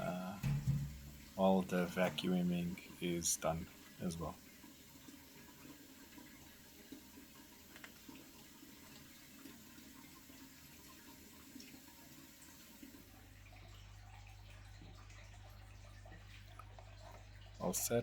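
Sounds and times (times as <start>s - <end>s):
low steady hum: 0.0s - 7.5s
water trickling and sloshing: 0.0s - 18.0s.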